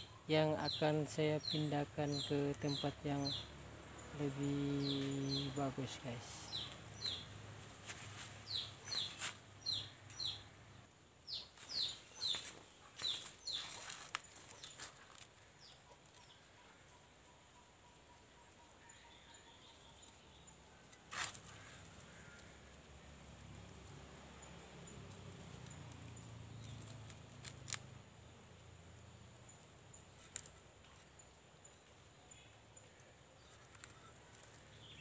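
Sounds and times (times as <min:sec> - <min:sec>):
bird chirping: 0:00.0 - 0:22.5, 0:23.3 - 0:35.0.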